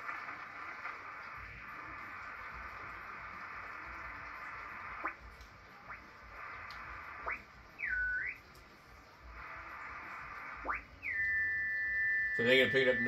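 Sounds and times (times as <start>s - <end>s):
radio receiver hiss: 0.0s - 13.0s
whistles sweeping in pitch: 10.7s - 13.0s.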